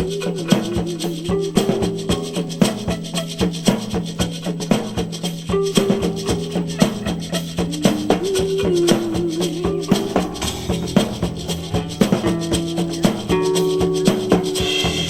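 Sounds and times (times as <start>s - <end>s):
drums and shaker beat: 0.0s - 15.0s
long held notes: 5.8s - 14.0s.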